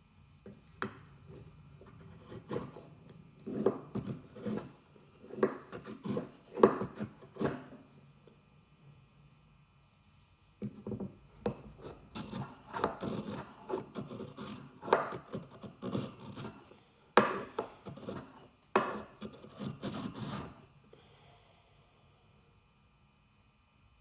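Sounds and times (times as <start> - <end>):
hand plane scraping wood: 1.9 - 2.8, 3.4 - 7.8, 11.4 - 16.6, 17.2 - 20.6.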